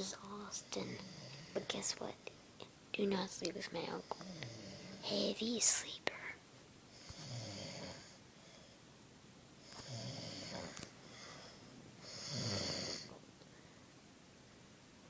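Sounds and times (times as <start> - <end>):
man snoring: 4.2 - 5.0, 7.0 - 8.2, 9.7 - 13.2.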